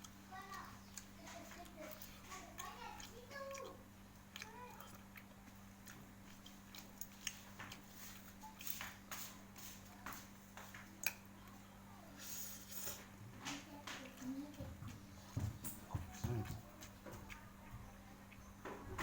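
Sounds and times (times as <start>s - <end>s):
chewing noodles: 0.0s - 13.2s.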